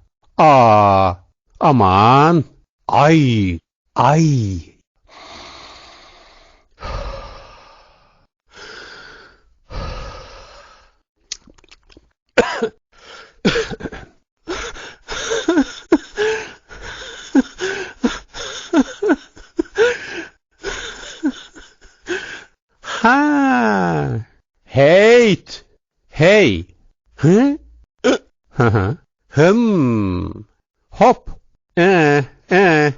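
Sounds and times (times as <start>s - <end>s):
breathy sighs: 5.1s - 11.0s, 16.2s - 18.8s, 19.8s - 21.3s, 22.0s - 23.2s
synthetic voice coughing: 12.4s - 12.8s, 28.0s - 28.3s.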